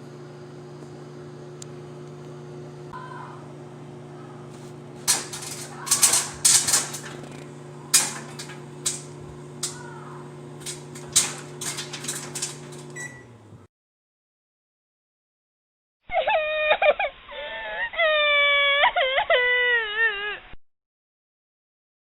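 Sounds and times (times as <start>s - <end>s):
electrical hum: 0.0s - 13.7s.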